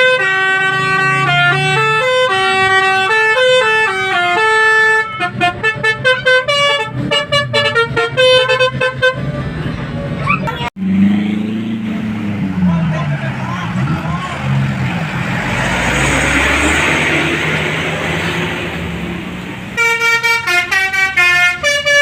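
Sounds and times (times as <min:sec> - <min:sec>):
musical bus horn playing: 0:00.0 - 0:10.7, 0:19.7 - 0:22.0.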